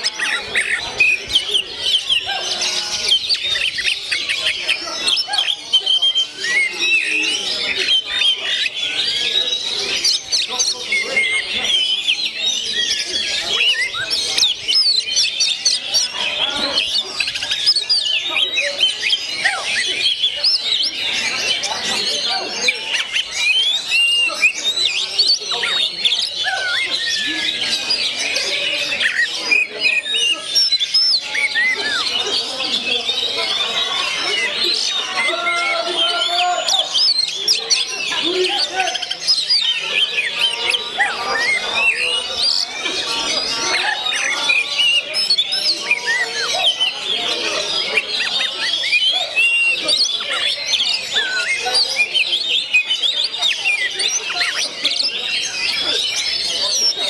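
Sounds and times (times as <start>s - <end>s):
bird singing whistles: 0.0s - 42.7s.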